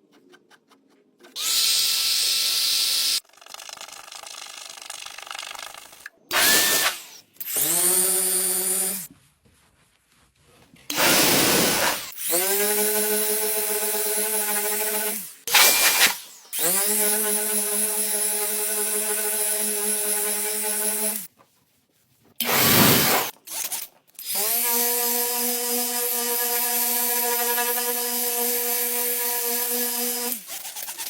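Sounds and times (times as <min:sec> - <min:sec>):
electric power tool spinning: 0:01.3 - 0:09.1, 0:10.9 - 0:21.3, 0:22.4 - 0:31.0
loud hissing bursts: 0:22.5 - 0:23.3.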